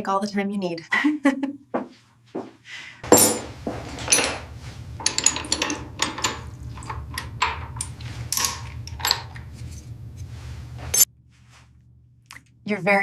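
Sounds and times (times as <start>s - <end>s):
low steady hum: 2.7s - 13.0s
metal hand tools clinking: 3.0s - 9.4s.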